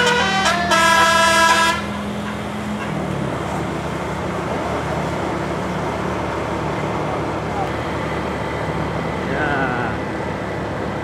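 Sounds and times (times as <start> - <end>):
musical bus air horns: 0.0 - 3.1
bus engine and road noise: 0.0 - 11.0.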